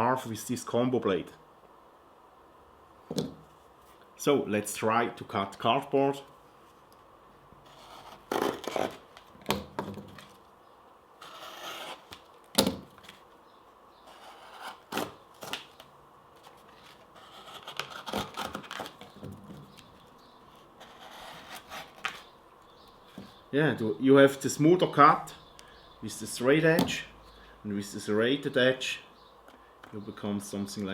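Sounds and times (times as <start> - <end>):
knife cutting cardboard: 7.6 - 10.3, 11.2 - 13.2, 14.0 - 19.9, 20.5 - 22.3
cardboard snapping: 14.5 - 20.0, 20.8 - 22.3.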